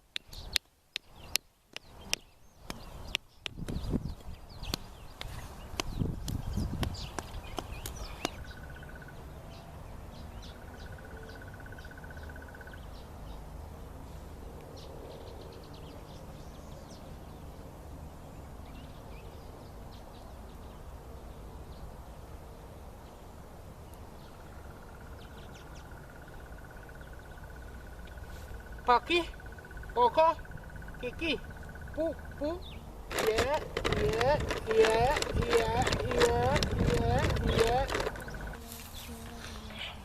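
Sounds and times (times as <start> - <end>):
bird chirps: 0.0 - 13.8, 23.9 - 33.0, 33.6 - 40.0
insect trilling: 24.4 - 40.0.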